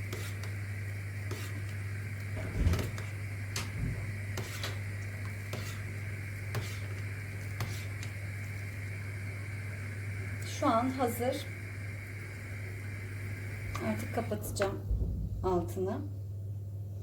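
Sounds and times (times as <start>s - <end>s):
low hum: 8.2s - 17.0s.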